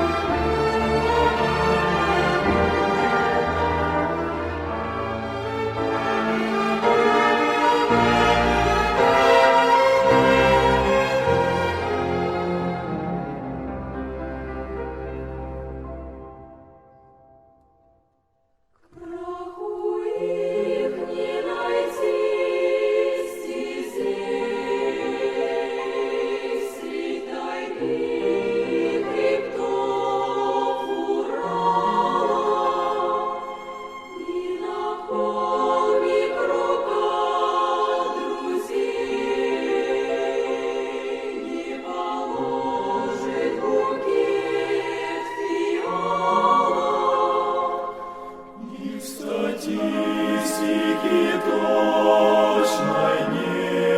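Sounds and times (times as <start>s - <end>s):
choir singing in harmony: 0.0s - 17.3s, 18.8s - 53.9s.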